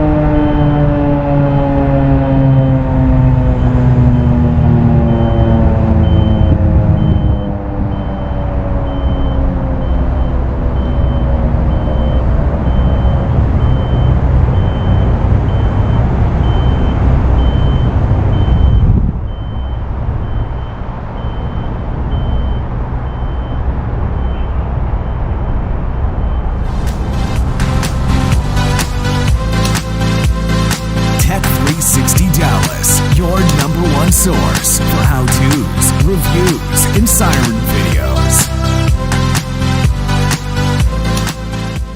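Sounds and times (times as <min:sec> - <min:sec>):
siren winding down: 0:00.0 - 0:30.4
heavy low rumble: 0:00.0 - 0:41.1
high beep: 0:05.0 - 0:20.5, 0:31.2 - 0:38.6.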